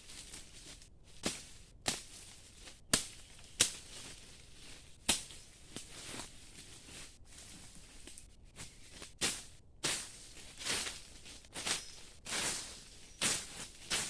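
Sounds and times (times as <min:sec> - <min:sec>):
sharp hand tool strikes: 0:05.1 - 0:05.4.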